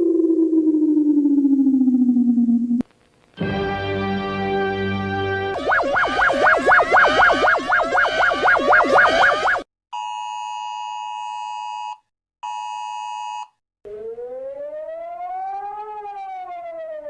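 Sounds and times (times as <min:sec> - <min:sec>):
rising and falling siren tone: 0:00.0 - 0:02.8, 0:05.5 - 0:09.7, 0:13.8 - 0:17.0
chord-like electronic beeps: 0:05.5 - 0:09.6.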